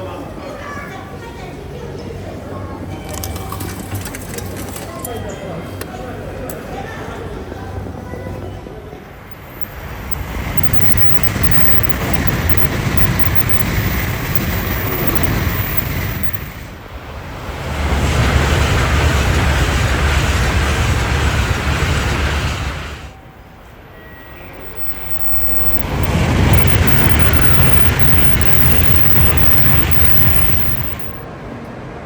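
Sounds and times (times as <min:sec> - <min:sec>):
train rumbling: 0:06.8 - 0:31.3.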